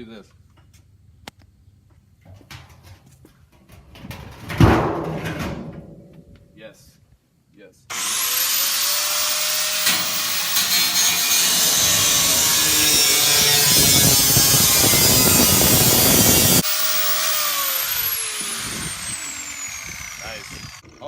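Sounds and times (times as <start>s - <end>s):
tool cutting sheet metal: 7.9s - 20.9s
power cutting tool whining: 7.9s - 21.0s.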